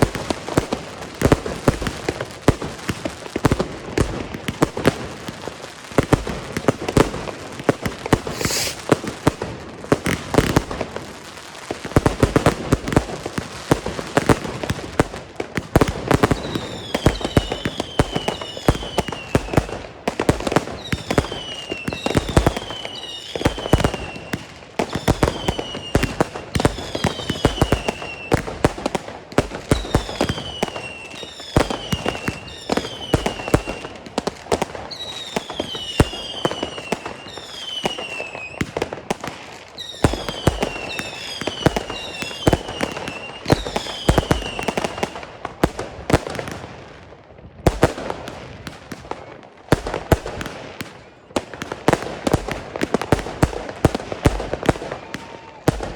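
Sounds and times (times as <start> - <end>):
firework bangs: 0.0 - 11.2, 11.8 - 46.8, 49.8 - 55.9
whistling fireworks: 0.0 - 55.9.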